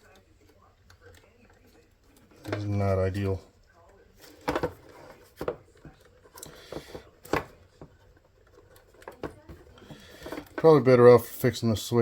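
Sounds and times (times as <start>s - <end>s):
plastic parts clicking and tapping: 4.2s - 11.0s.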